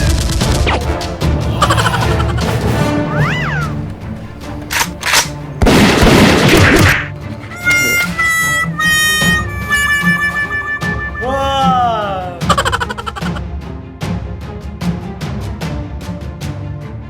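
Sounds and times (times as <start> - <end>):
loud crash-like burst: 5.6 - 6.9
music with held melody: 7.1 - 13.4.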